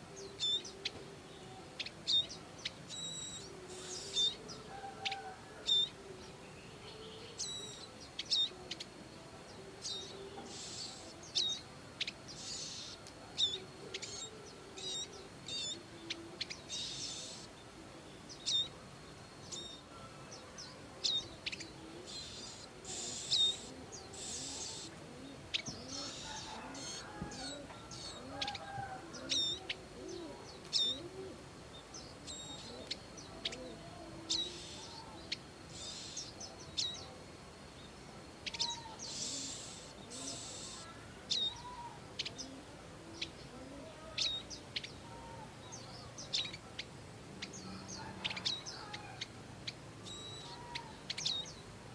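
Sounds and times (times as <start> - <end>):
fainter lower bird calls: 0.0 - 51.7.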